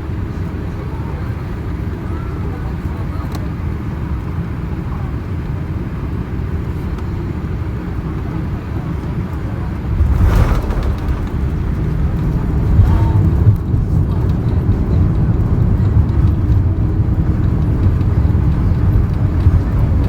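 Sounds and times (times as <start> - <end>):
airliner cabin rumble: 9.6 - 20.0
landing jolt: 9.9 - 13.6.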